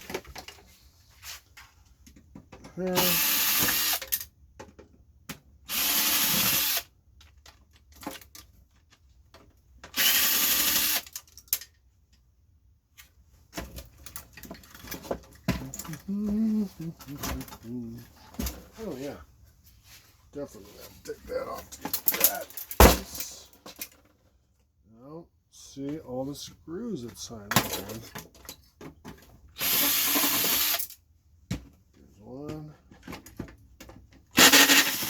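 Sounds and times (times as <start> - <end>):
handheld power tool running: 3.0 - 4.1, 5.7 - 6.8, 10.0 - 11.2, 29.6 - 30.9, 34.4 - 35.0.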